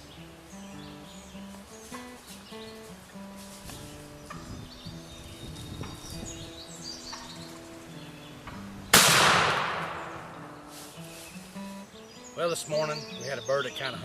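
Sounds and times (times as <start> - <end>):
faint bird chirps: 0.0 - 8.9, 10.0 - 14.0
guitar music: 0.0 - 14.0
loud shotgun shot: 8.9 - 10.6.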